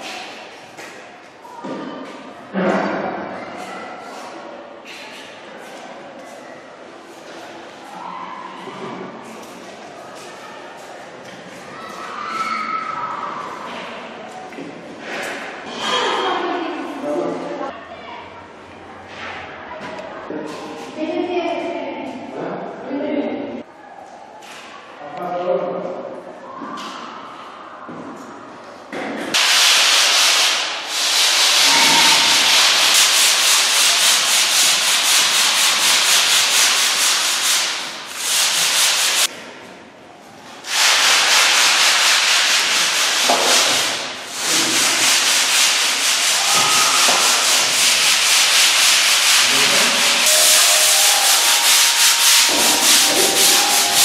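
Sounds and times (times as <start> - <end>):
abrasive sanding: 29.4 - 39.3, 40.7 - 54.0.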